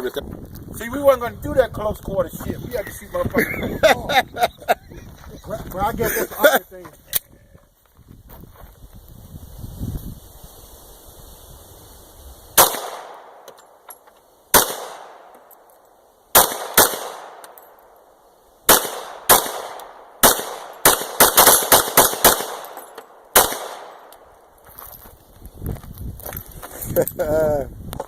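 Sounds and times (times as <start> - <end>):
gunshots with echo: 12.6 - 13.4, 14.5 - 15.3, 16.4 - 17.5, 18.7 - 22.8, 23.4 - 24.0.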